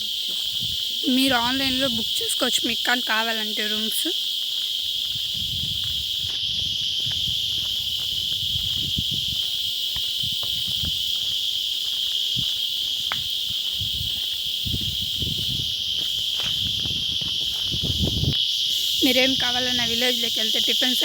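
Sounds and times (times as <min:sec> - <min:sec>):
insect chorus buzzing: 0:00.0 - 0:21.0
low thuds and rumbles: 0:16.4 - 0:18.4.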